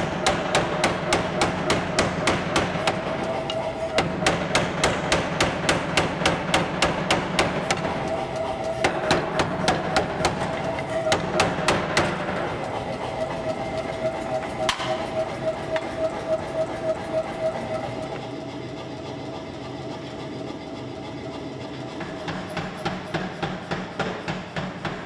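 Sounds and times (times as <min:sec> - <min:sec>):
power hammer striking steel: 0:00.0 - 0:13.0, 0:13.7 - 0:16.0, 0:22.0 - 0:25.0.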